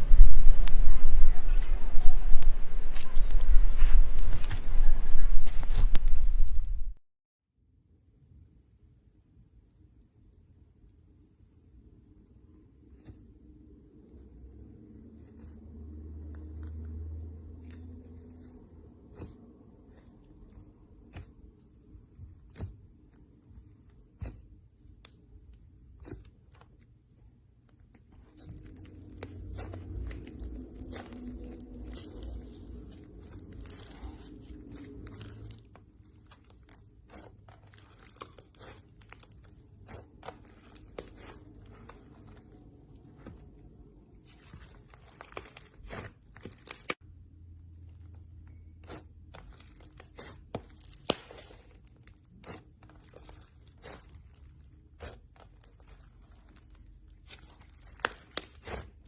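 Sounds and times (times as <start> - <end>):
slime clicking and squishing: 17.6 - 43.5, 44.2 - 47.0, 47.9 - 59.0.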